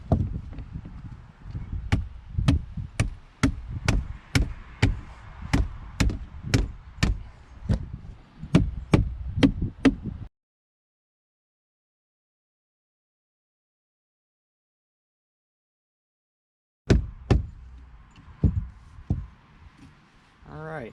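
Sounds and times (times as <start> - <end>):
sharp knocks tapping a part: 1.9 - 7.8, 16.9 - 19.3.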